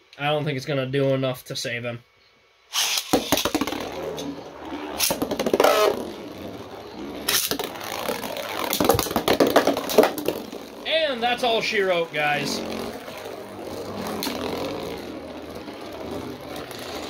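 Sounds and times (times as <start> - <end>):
spinning tops whirring and clashing: 2.7 - 17.0.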